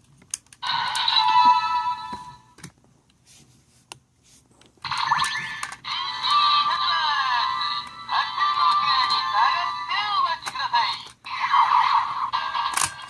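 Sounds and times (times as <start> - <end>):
electronic toy sound effect: 0.6 - 2.4, 4.9 - 13.0.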